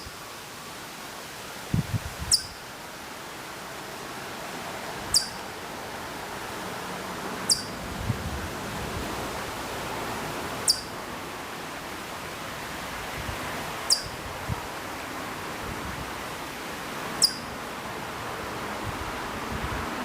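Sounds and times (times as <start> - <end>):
steady background hiss: 0.0 - 20.0
chipmunk chip call: 2.3 - 2.6, 5.1 - 5.4, 7.5 - 7.8, 10.6 - 11.0, 13.9 - 14.2, 17.2 - 17.5.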